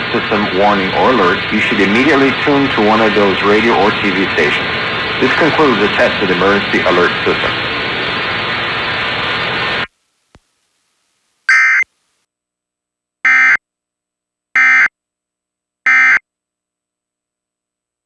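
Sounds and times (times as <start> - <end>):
broadcast hiss: 0.0 - 12.3.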